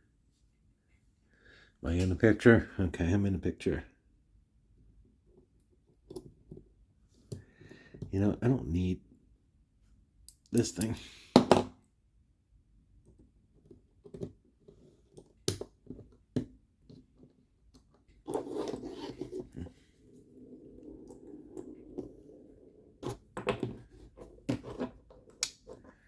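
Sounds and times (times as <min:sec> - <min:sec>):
rubbing and rustling: 0:17.0 - 0:26.0.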